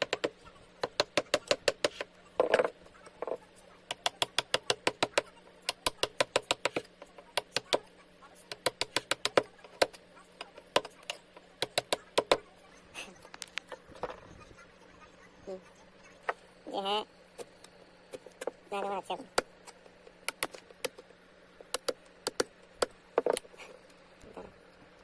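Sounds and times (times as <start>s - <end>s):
rapid light taps: 19.3s - 23.6s.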